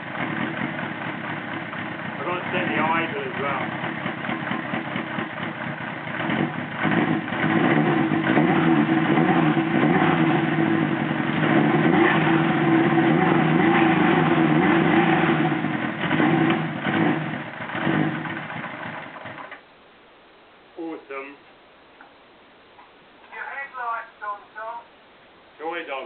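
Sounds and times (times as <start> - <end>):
motorcycle engine revving: 0.0 - 19.6.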